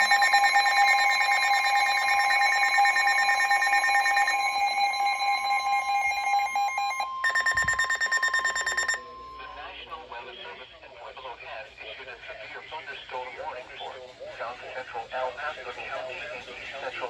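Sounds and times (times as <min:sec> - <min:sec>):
two-tone alert tone: 0:00.0 - 0:09.6.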